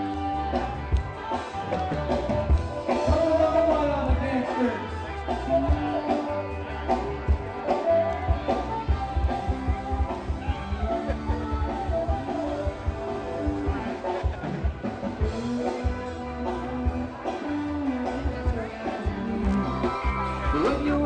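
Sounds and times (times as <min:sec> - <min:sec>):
upbeat rock and roll music: 0:00.0 - 0:21.0.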